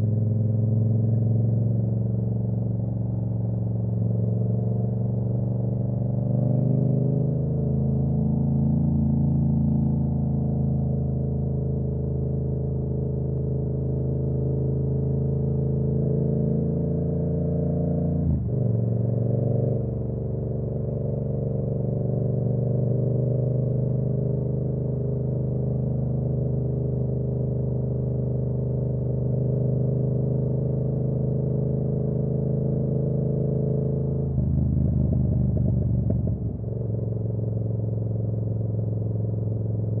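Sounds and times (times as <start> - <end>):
motorcycle engine running: 30.0 - 40.0.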